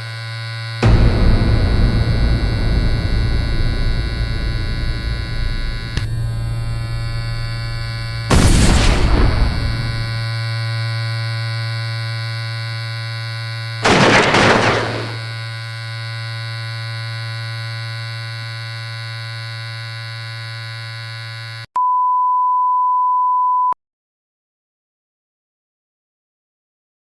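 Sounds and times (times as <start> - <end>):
buzzy electronic alarm drone: 0.0 - 21.7
explosion: 0.8 - 10.2, 13.8 - 15.2
steady high beep tone: 0.8 - 10.2
low hum: 0.8 - 10.4.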